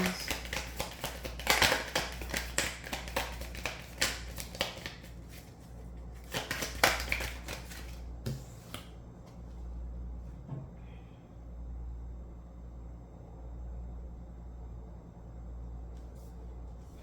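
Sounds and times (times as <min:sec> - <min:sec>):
cards snapping: 0:00.0 - 0:05.5, 0:06.2 - 0:08.0
cards being shuffled: 0:00.0 - 0:08.9.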